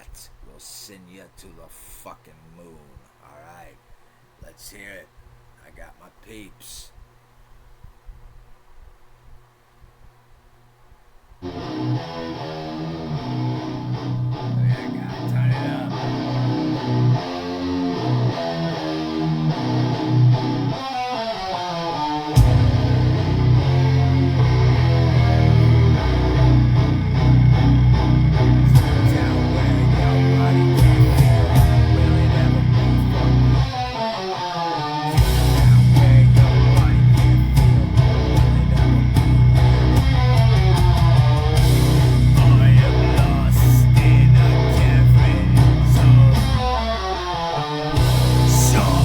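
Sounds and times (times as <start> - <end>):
electric guitar riffing: 11.4 - 49.0
heavy metal song: 11.4 - 49.0
falling guitar slide: 15.5 - 49.0.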